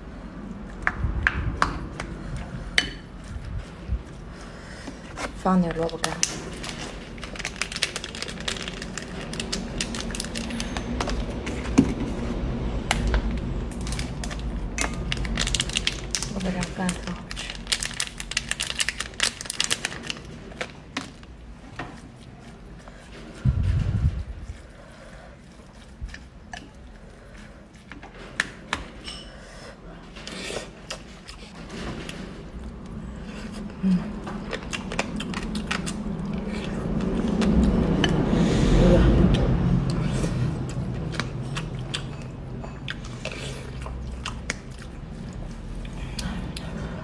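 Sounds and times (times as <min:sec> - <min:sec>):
steady low hum: 0:19.8 - 0:47.0
person chewing crunchy food: 0:32.5 - 0:38.5, 0:39.1 - 0:47.0.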